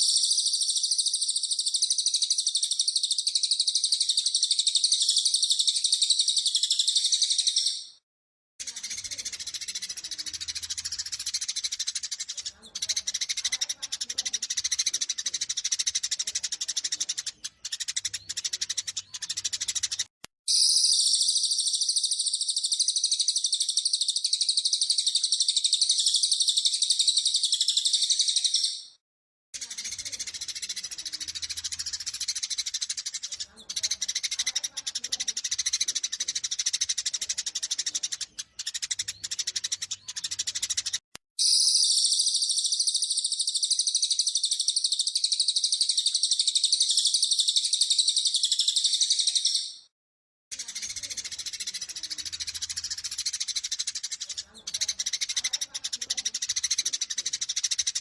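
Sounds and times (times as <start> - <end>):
sparrows chirping and chattering: 0.0 - 8.0, 8.6 - 29.0, 29.6 - 49.9, 50.5 - 58.0
dense rapid high chirping: 14.5 - 28.7, 35.6 - 49.6.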